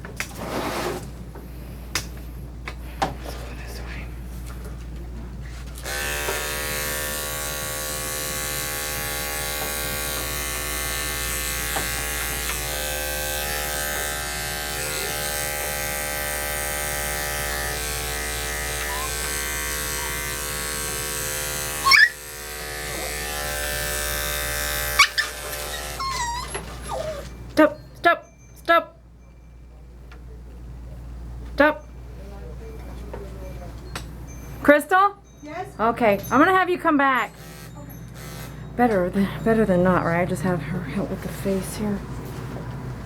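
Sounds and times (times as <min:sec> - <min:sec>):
electric clippers buzzing: 0:05.8 - 0:27.2, 0:37.3 - 0:38.8
puppy yelping: 0:18.9 - 0:19.3, 0:21.8 - 0:22.2, 0:24.9 - 0:27.4.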